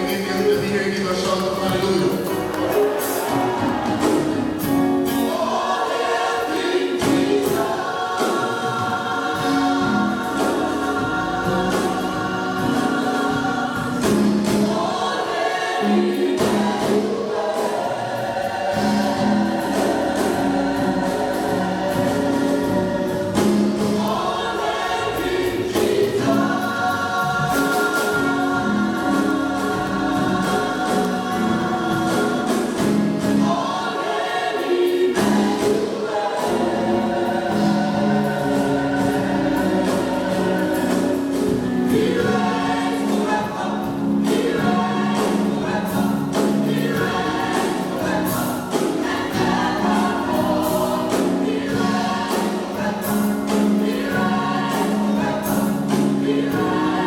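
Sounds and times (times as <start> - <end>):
gospel choir singing: 0.0 - 57.0.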